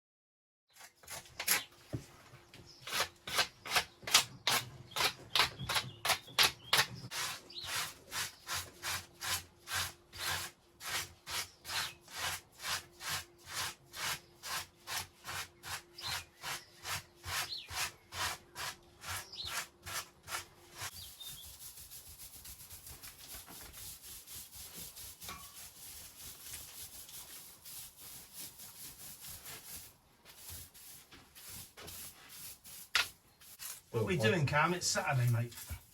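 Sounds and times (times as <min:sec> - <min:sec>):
hand tool scraping strokes: 0:00.7 - 0:35.9
fast scratching: 0:13.5 - 0:35.9.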